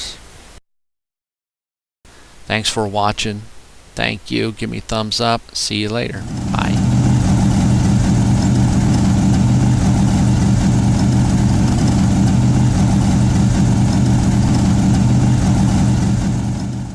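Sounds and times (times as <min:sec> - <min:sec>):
car engine idling: 0:06.0 - 0:16.9.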